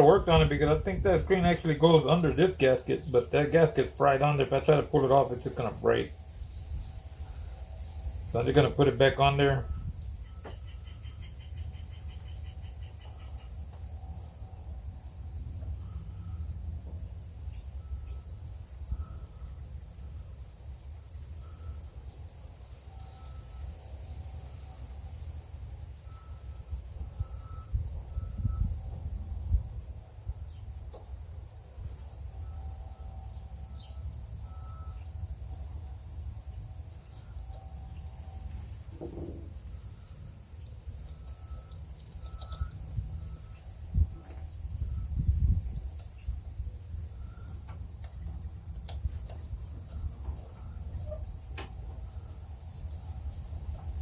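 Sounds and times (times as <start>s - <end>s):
insect chirring: 0.0s - 54.0s
soft knocks of handled parts: 38.9s - 39.6s.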